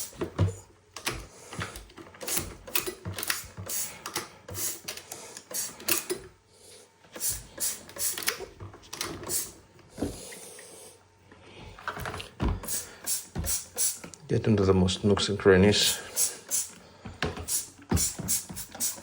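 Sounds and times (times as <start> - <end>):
spray bottle bursts: 0.0 - 0.2, 3.2 - 3.9, 4.5 - 4.9, 5.5 - 5.8, 7.2 - 8.4, 9.3 - 9.6, 12.6 - 14.1, 16.1 - 16.8, 17.4 - 19.0.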